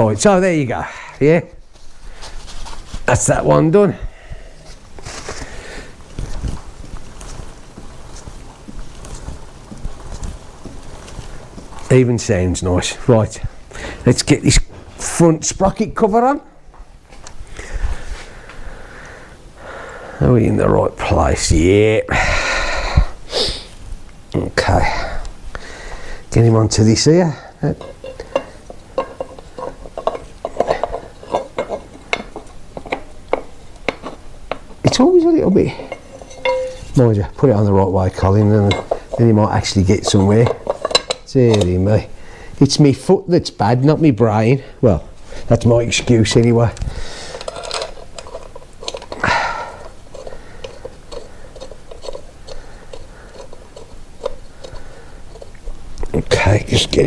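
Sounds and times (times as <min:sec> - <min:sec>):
metallic clinks and scrapes: 0:26.2 - 0:42.2, 0:45.1 - 0:57.0
metal parts clicking and tapping: 0:27.6 - 0:42.2, 0:45.3 - 0:57.0
metal knock and clatter: 0:27.7 - 0:35.0, 0:35.7 - 0:37.4, 0:38.2 - 0:41.8.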